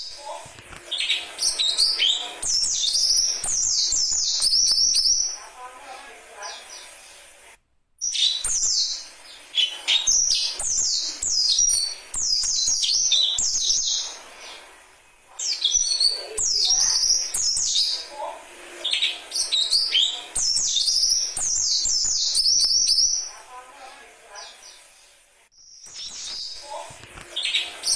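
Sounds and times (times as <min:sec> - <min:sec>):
bird song chirps and whistles: 0:00.9 - 0:05.4, 0:08.0 - 0:14.6, 0:15.4 - 0:18.1, 0:18.8 - 0:23.4, 0:25.6 - 0:26.8, 0:27.4 - 0:27.9.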